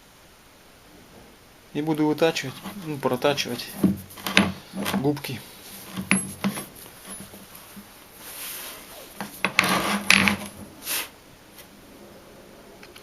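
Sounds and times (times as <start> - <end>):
metal parts scraping and clinking: 3.6 - 5.1, 5.7 - 7.8, 9.2 - 10.6.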